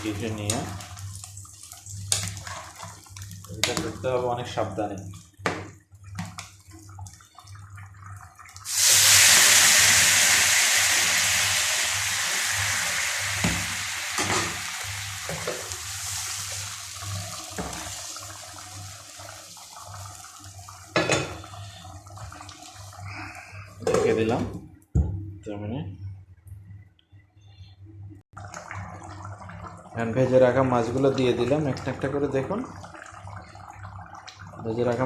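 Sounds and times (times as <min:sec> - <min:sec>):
hot oil sizzling: 0:08.6 - 0:23.1.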